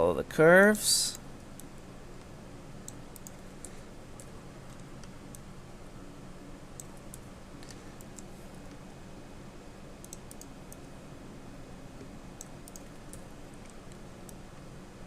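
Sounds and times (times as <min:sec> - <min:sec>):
steady low hum: 0:00.0 - 0:15.0
mouse and keyboard clicks: 0:12.0 - 0:14.4.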